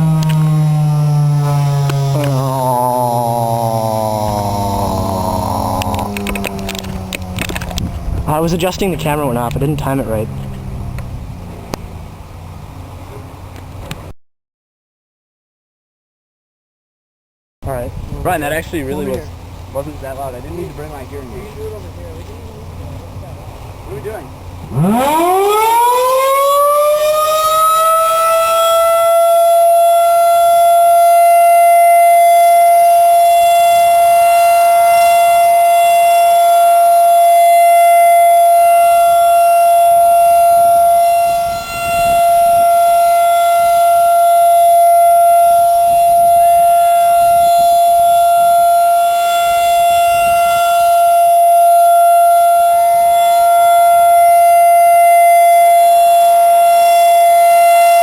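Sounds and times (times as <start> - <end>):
warning siren: 0.0 - 12.4, 24.6 - 58.0.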